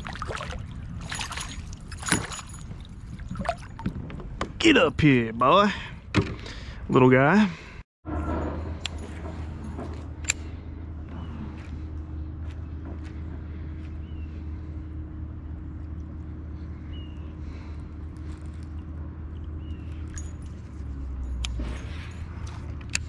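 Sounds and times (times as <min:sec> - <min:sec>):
low rumble: 0:07.6 - 0:23.0.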